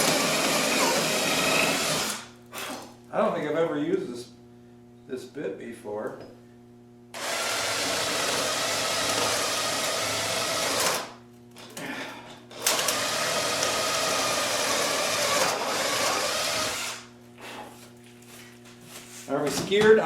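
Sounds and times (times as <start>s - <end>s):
cordless drill whining: 0.0s - 2.8s, 7.2s - 11.1s, 12.6s - 17.0s.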